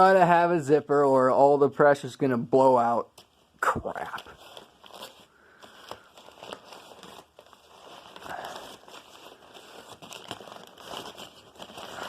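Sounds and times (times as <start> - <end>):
vacuum bag crinkling: 3.3 - 12.0.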